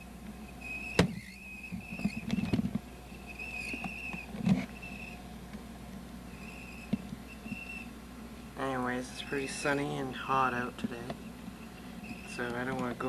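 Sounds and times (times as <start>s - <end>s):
camcorder high-pitched squeal: 0.4s - 2.6s, 3.2s - 5.2s, 6.3s - 7.9s, 12.0s - 12.4s.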